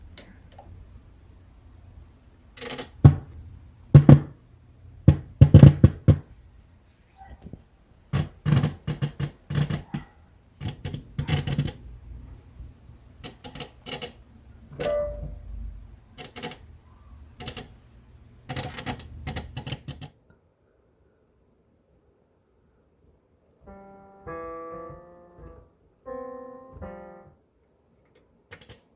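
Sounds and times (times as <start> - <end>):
faint low hum: 14.2 - 28.5
digital piano sharp ticks: 14.8 - 15.4, 23.7 - 27.3.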